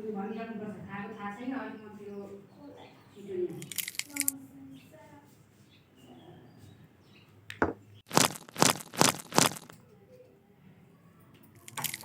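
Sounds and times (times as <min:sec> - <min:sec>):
sharp cracks: 0:03.6 - 0:04.3, 0:07.5 - 0:09.8, 0:11.6 - 0:12.0.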